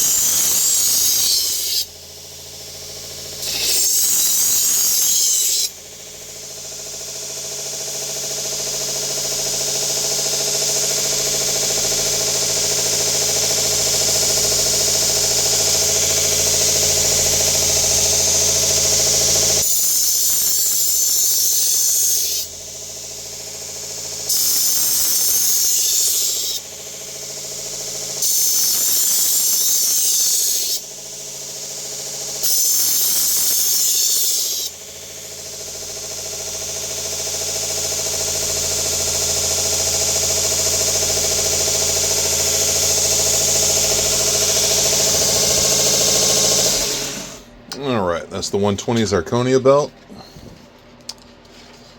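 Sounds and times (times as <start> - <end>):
knife grinding on a sanding belt: 0.0 - 1.9, 3.4 - 5.8, 18.6 - 22.5, 24.3 - 26.7, 28.2 - 30.9, 32.4 - 34.8
belt grinder motor hum: 0.0 - 2.0, 3.1 - 6.5, 9.6 - 35.5, 38.5 - 47.5.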